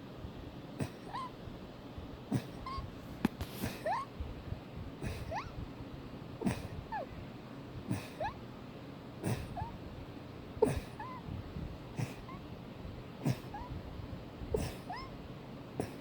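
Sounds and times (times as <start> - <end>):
person sneezing: 0.8 - 1.2, 2.3 - 2.8, 6.4 - 6.8, 7.9 - 8.3, 9.2 - 9.7, 10.6 - 11.1, 12.0 - 12.4, 13.2 - 13.7, 14.6 - 15.1, 15.8 - 16.0.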